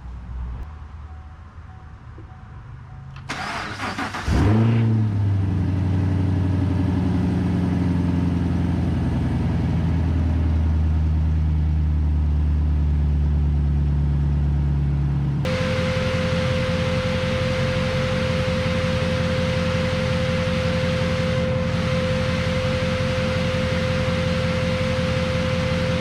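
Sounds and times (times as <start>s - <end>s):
car engine revving and idling: 3.1s - 26.0s
starter motor cranking: 3.2s - 4.4s.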